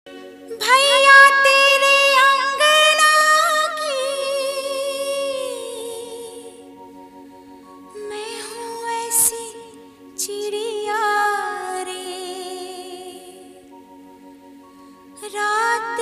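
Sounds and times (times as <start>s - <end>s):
high voice singing: 0.1s - 6.7s.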